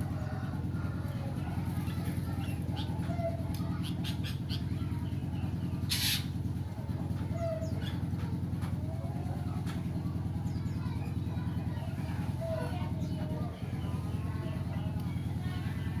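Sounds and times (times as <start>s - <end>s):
harsh rasping bird call: 5.8s - 6.4s.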